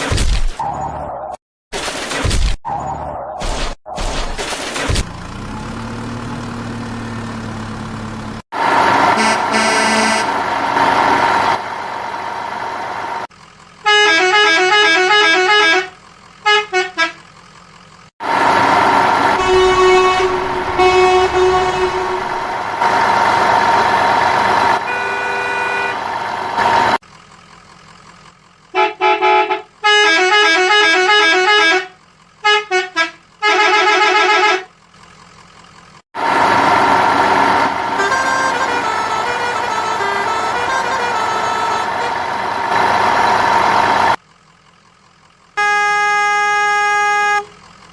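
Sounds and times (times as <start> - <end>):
truck engine running: 5.0 - 47.9
musical vehicle horn honking: 9.1 - 10.3, 13.8 - 17.2, 19.2 - 22.5, 24.7 - 26.1, 28.8 - 34.7, 37.9 - 42.8, 45.6 - 47.6.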